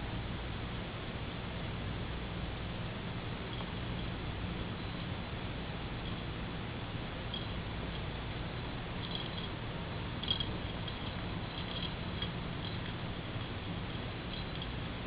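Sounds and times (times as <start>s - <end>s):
low hum: 1.6s - 15.0s
cat toy ticks and tinkles: 7.2s - 15.0s.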